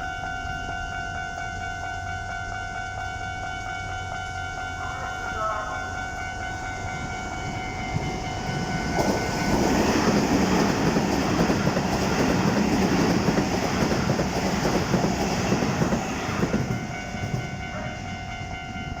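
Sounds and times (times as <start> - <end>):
crossing warning bell ringing: 0.0 - 19.0
train passing: 0.0 - 19.0.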